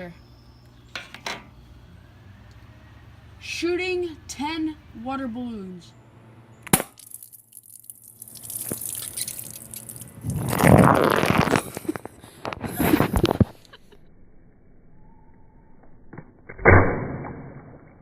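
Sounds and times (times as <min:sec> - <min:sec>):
airsoft pistol shot: 0:06.7 - 0:07.0, 0:16.5 - 0:17.9
water spraying and splashing: 0:07.1 - 0:11.8.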